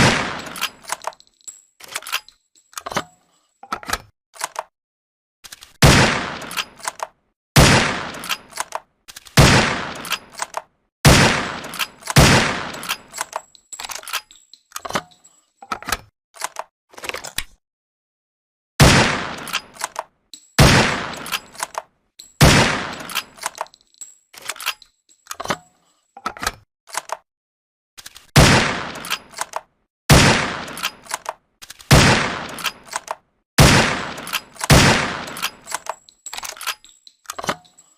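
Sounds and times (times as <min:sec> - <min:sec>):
rifle shots: 0:00.0 - 0:00.7, 0:05.8 - 0:06.7, 0:07.6 - 0:08.6, 0:09.4 - 0:10.4, 0:11.1 - 0:13.2, 0:18.8 - 0:19.9, 0:20.6 - 0:21.7, 0:22.4 - 0:23.4, 0:28.4 - 0:29.4, 0:30.1 - 0:31.2, 0:31.9 - 0:33.0, 0:33.6 - 0:35.8
small metallic clicks: 0:00.4 - 0:04.7, 0:06.4 - 0:07.2, 0:08.1 - 0:09.4, 0:10.0 - 0:10.7, 0:11.6 - 0:17.6, 0:19.4 - 0:27.3, 0:28.0 - 0:28.4, 0:29.0 - 0:29.7, 0:30.6 - 0:33.2, 0:34.0 - 0:37.9.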